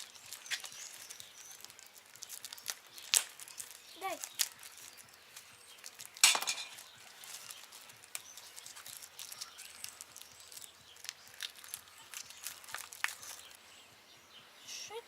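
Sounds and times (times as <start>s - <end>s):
clicks and rattles handling bicycle wheel: 5.9s - 7.6s.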